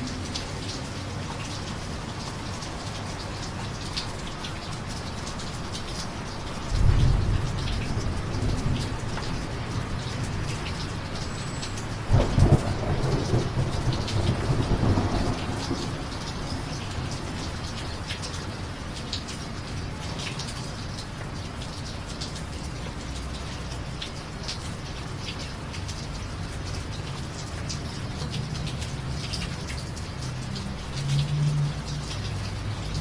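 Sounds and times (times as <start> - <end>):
steady rain falling: 0.0 - 33.0
thunder rumbling: 12.1 - 16.6.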